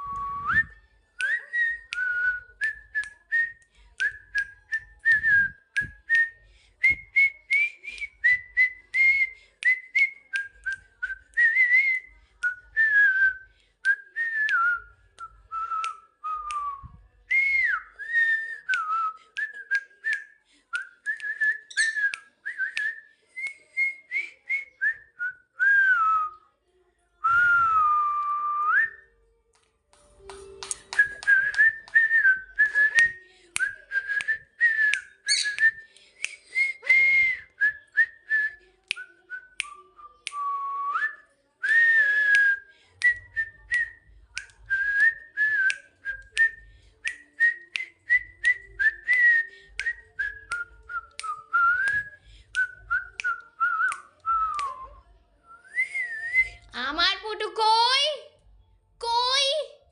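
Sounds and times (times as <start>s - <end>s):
person whistling a tune: 0.0s - 12.1s, 30.6s - 54.8s, 55.6s - 56.6s.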